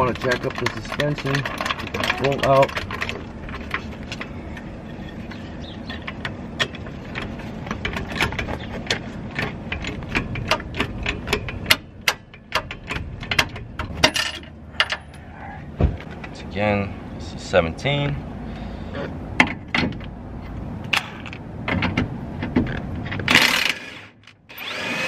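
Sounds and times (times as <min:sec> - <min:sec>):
hand tools clicking and clanking: 0:00.0 - 0:04.7, 0:05.8 - 0:16.4.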